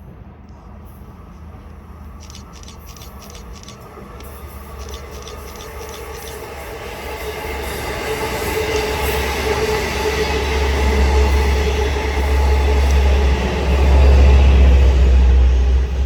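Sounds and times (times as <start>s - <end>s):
train low rumble: 0.0s - 16.0s
wheels clicking over track: 2.2s - 14.2s.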